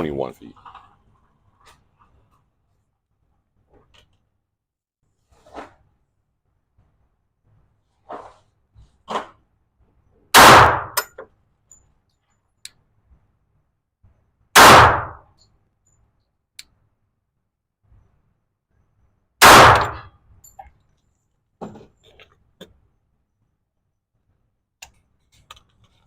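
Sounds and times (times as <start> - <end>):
pistol shots echoing: 10.4 - 11.0, 14.6 - 15.2, 19.4 - 20.1.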